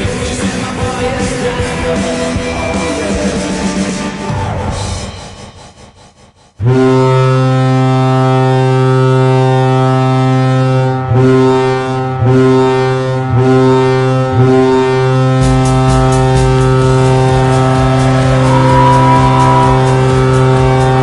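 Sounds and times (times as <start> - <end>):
deep air horn blast: 6.6 - 21.0.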